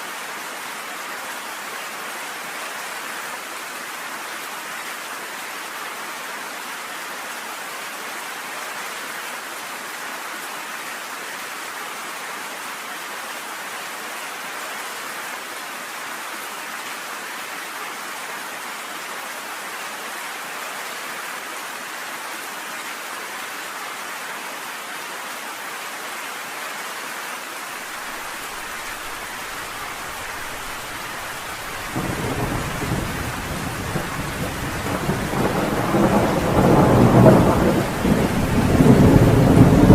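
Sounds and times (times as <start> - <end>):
rain on a porch: 0.0 - 39.9
thunder rumble: 29.6 - 39.9.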